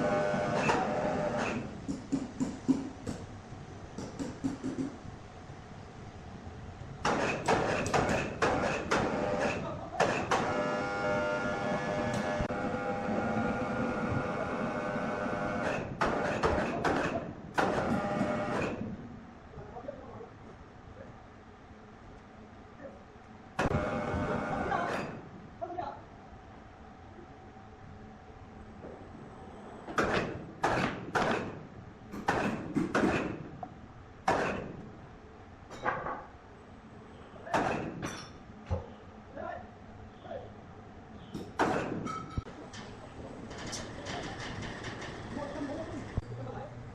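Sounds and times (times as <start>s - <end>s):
woodworking machinery humming: 10.4s - 15.7s.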